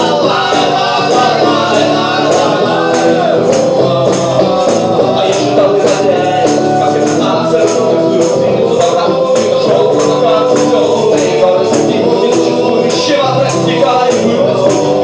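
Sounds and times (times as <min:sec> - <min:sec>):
acoustic band playing live: 0:00.0 - 0:15.0.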